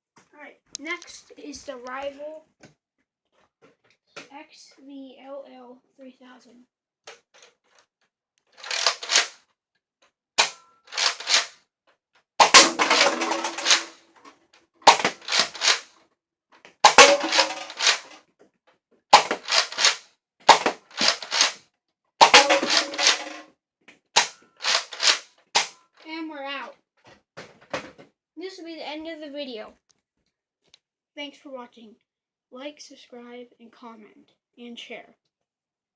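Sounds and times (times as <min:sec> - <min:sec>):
toy blaster firing clacks: 0:08.6 - 0:09.4, 0:10.4 - 0:11.5, 0:12.4 - 0:14.0, 0:14.9 - 0:15.9, 0:16.9 - 0:18.2, 0:19.2 - 0:21.6, 0:22.2 - 0:23.4, 0:24.2 - 0:25.8
balls clattering on plastic cups: 0:12.4 - 0:14.3, 0:14.9 - 0:15.9, 0:16.8 - 0:18.2, 0:19.2 - 0:21.6, 0:22.2 - 0:23.4.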